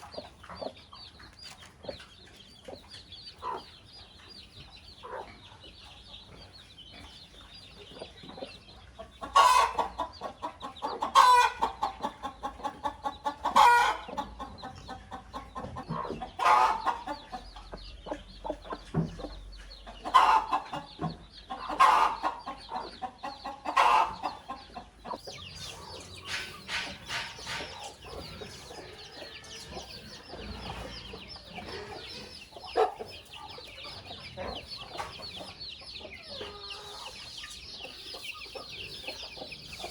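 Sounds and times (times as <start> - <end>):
chickens clucking: 0.0 - 39.9
loud chicken calls: 9.2 - 14.5, 16.3 - 17.4, 20.0 - 20.9, 21.6 - 35.5.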